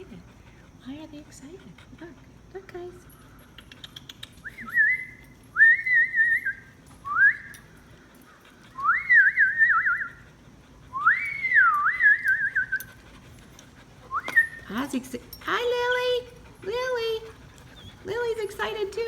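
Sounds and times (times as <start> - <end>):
dog whining: 14.0 - 19.0.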